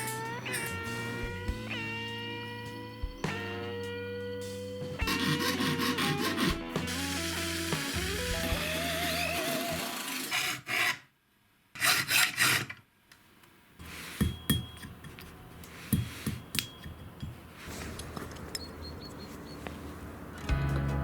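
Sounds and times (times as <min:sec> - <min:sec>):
background music: 0:00.0 - 0:10.1, 0:20.4 - 0:21.0
harsh rasping metal noise: 0:05.0 - 0:11.0, 0:13.8 - 0:14.6.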